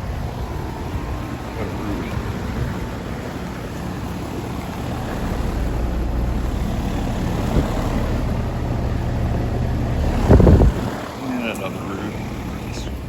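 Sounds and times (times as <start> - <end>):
compressor hum: 0.0 - 13.0
condenser fan rushing: 0.0 - 13.0.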